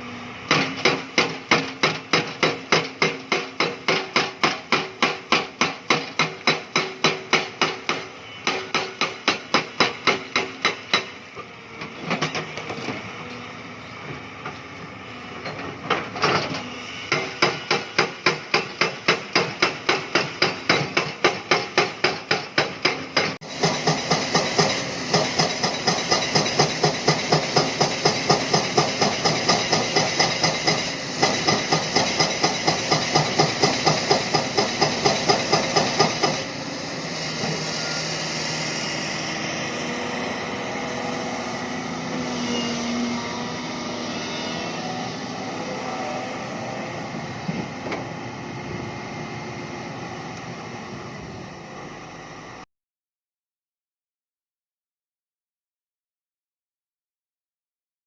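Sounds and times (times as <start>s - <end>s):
excavator engine: 0.0s - 52.6s
hydraulic rock breaker hammering: 0.4s - 11.3s, 15.9s - 36.6s.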